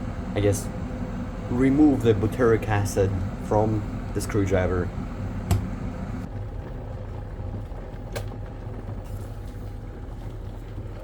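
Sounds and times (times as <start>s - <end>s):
electric kettle heating water: 0.0s - 11.0s
kettle switch click: 5.5s - 5.7s.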